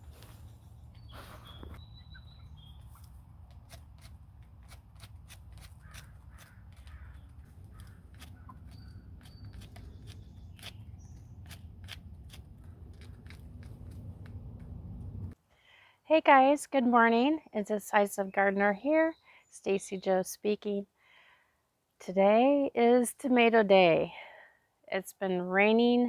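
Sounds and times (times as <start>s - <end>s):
high bird chirps: 0.9s - 3.2s, 5.8s - 11.6s.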